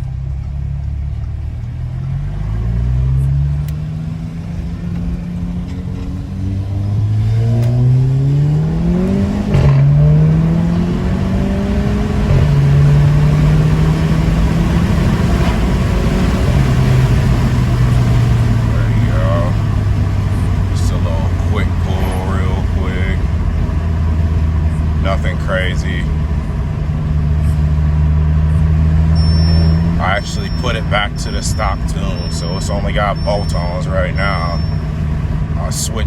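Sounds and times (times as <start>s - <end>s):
car engine accelerating: 0.0s - 36.0s.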